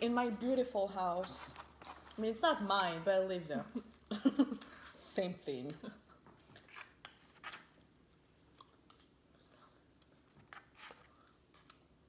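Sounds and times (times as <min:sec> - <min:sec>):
faint chewing: 0:06.1 - 0:12.0.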